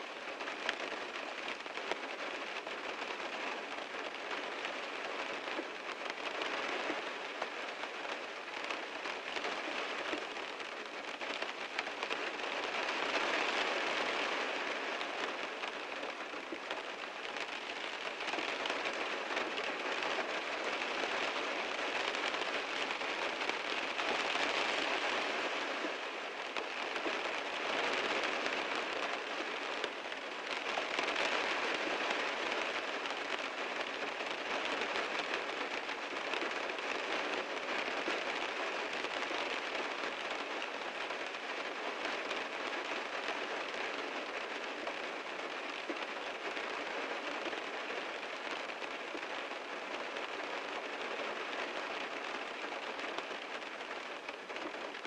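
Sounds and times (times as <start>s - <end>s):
heavy rain on a car: 0.0s - 55.0s.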